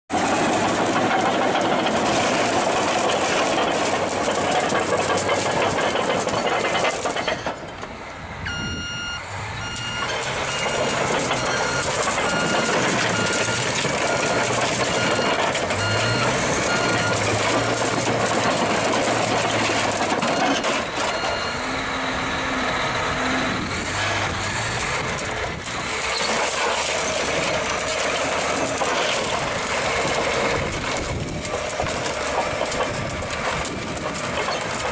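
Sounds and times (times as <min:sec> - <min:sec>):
heavy construction machinery running: 0:00.1 - 0:34.9
reversing alarm beeping: 0:08.4 - 0:17.8, 0:20.2 - 0:22.2.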